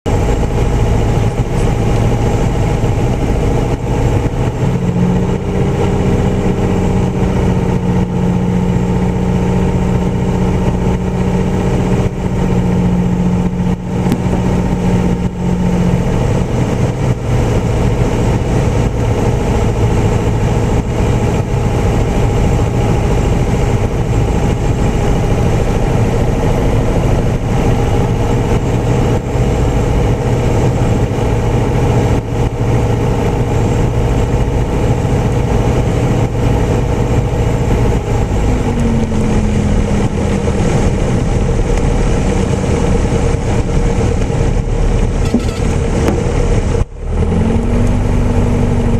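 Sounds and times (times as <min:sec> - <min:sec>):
aircraft engine and propeller droning: 0:00.0 - 0:48.9
steady tone: 0:37.2 - 0:48.9.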